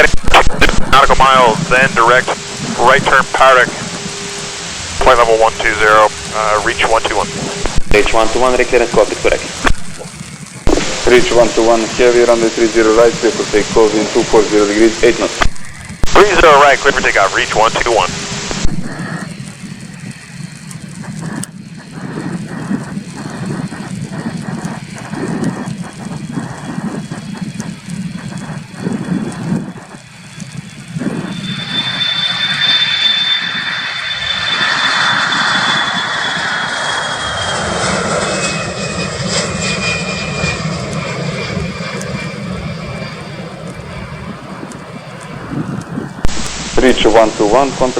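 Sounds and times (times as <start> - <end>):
high jet whine: 0.0 - 47.9
jet engines rumbling: 0.0 - 47.9.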